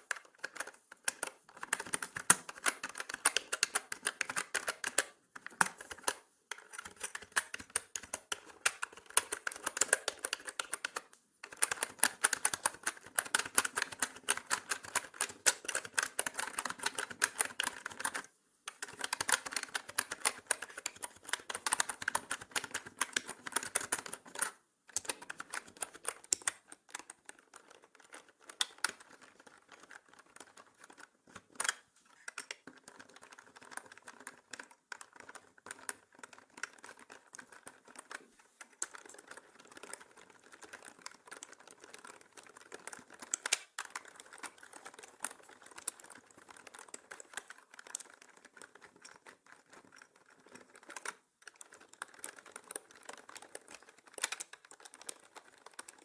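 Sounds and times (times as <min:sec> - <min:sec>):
mechanical keyboard key clicks: 0:00.1 - 0:38.2, 0:49.7 - 0:56.0.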